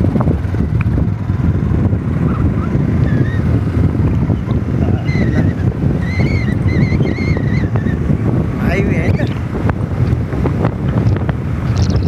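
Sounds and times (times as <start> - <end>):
wind buffeting microphone: 0.0 - 12.0
high warbling whistles: 5.0 - 8.0.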